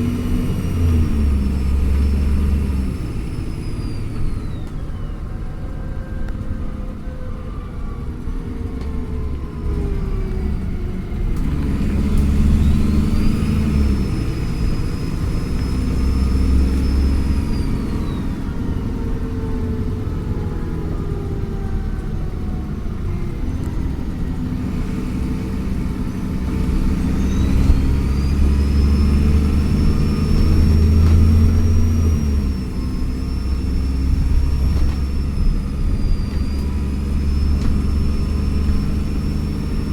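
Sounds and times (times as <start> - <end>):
bus diesel engine at full throttle: 0.0 - 39.9
high turbo whistle: 0.2 - 8.0, 12.0 - 19.8, 26.8 - 39.9.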